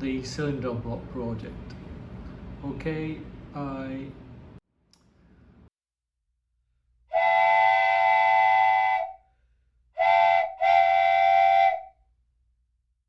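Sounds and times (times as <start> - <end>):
steam whistle blasts: 7.1 - 9.3, 10.0 - 12.0.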